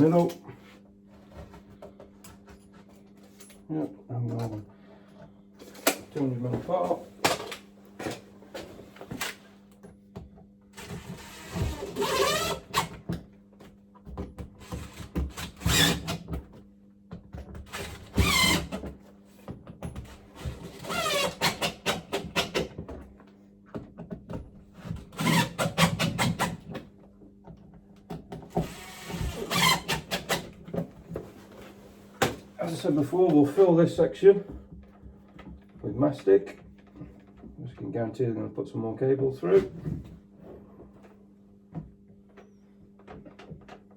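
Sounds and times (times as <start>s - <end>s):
cordless drill whirring: 10.8s - 12.9s, 28.5s - 30.4s.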